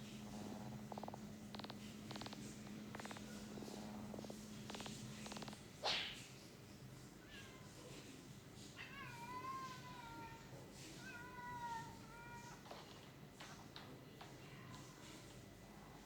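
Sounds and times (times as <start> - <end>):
cat meowing: 11.0 - 12.7.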